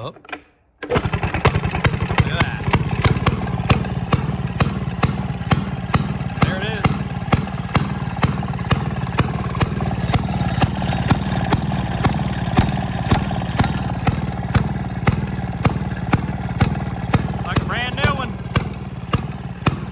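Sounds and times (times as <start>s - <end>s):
small engine running with sharp cracks: 0.8s - 19.9s.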